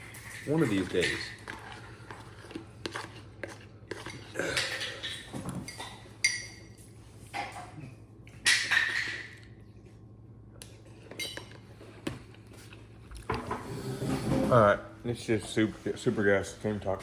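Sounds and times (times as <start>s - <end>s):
metal utensil clinking on bowl: 0.0s - 1.5s.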